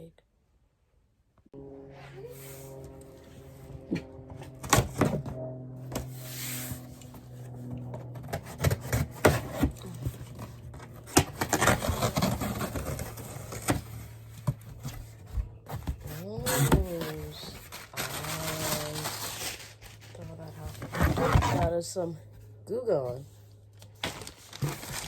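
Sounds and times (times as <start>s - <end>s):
steady low hum: 1.2s - 25.0s
packaging rustling and scraping: 3.8s - 21.8s, 23.3s - 25.0s.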